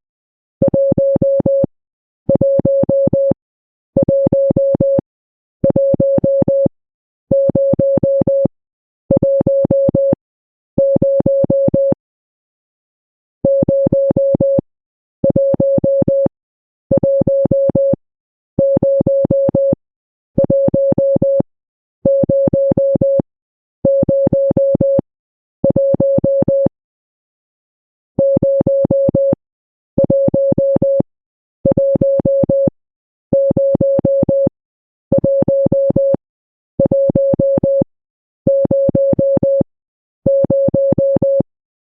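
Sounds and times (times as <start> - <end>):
morse code beeps: 2.4 - 3.4, 9.2 - 10.2, 18.6 - 19.8, 25.6 - 26.7, 28.2 - 29.4, 33.4 - 34.5, 35.1 - 36.2, 38.5 - 39.7, 40.3 - 41.5.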